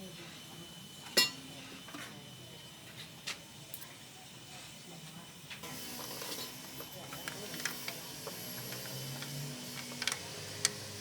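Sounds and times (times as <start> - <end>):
faint voices: 0.0 - 9.4.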